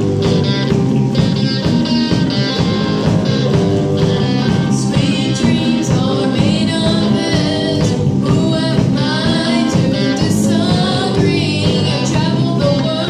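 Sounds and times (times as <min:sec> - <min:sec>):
instrumental accompaniment: 0:00.0 - 0:13.0
person singing: 0:04.2 - 0:13.0.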